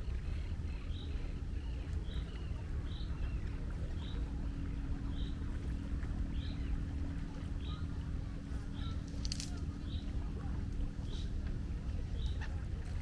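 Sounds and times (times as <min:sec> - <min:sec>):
seagulls calling: 0:00.0 - 0:10.3
faint steady hum: 0:00.0 - 0:13.0
low rumble of sea: 0:00.0 - 0:13.0.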